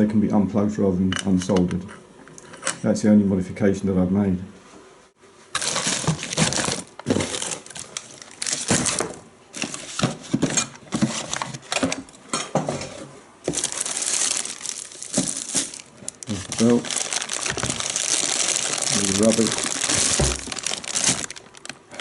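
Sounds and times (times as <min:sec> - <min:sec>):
objects rustling and clattering: 0:05.4 - 0:22.0.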